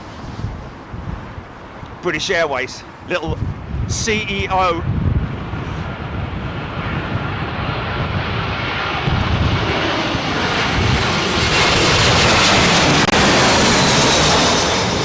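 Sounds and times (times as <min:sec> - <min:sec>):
jet airliner engine roar: 0:00.0 - 0:15.0.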